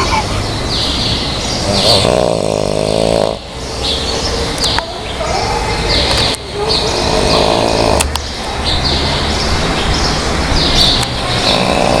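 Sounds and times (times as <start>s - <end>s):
small birds chirping: 0.0s - 12.0s
snoring: 1.6s - 3.5s, 6.9s - 8.2s, 11.4s - 12.0s.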